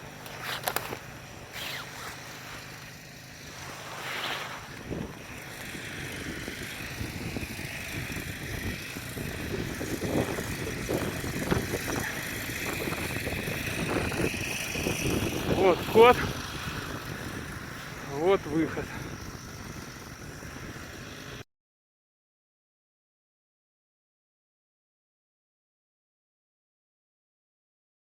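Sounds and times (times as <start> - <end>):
snowmobile engine running: 0.0 - 21.4
wind on microphone: 3.8 - 21.4.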